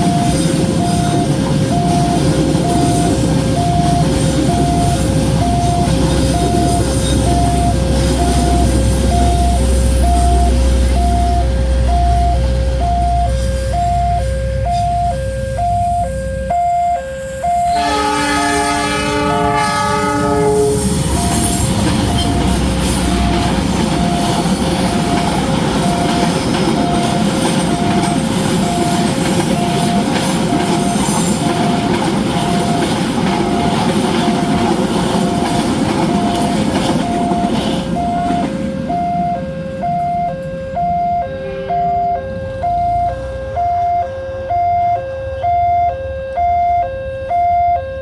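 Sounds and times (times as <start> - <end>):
train rumble and wheel noise: 0.0 - 48.0
two-tone crossing alarm beeping: 0.0 - 48.0
train horn: 17.1 - 23.7, 40.7 - 43.5.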